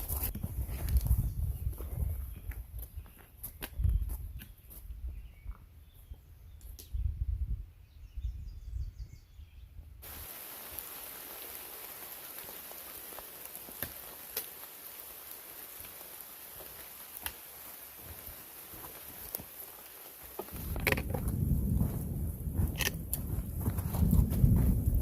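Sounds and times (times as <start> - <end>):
raindrops ticking close by: 10.0 - 25.0
steady rain hiss: 10.0 - 25.0
low rumble on microphone: 20.6 - 25.0.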